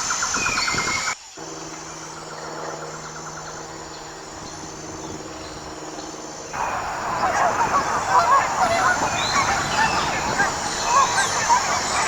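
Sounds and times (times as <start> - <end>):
low hum: 1.3 - 12.0
geese calling: 1.4 - 12.0.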